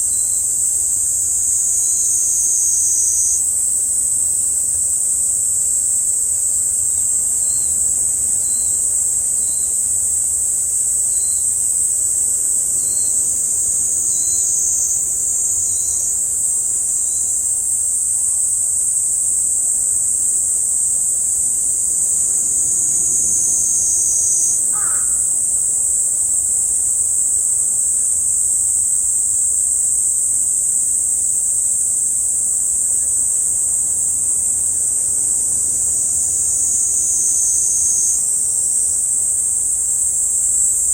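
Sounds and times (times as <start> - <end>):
cicadas droning: 0.0 - 40.9
bird call: 24.7 - 25.4.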